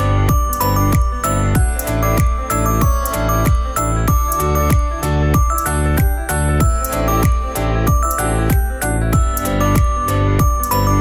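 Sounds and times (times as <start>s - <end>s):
electronic music with kick drum: 0.0s - 11.0s.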